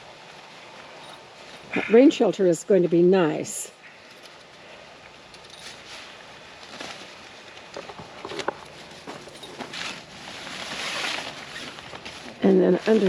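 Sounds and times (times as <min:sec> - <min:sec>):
fabric rustling and light knocks: 0:05.5 - 0:13.0.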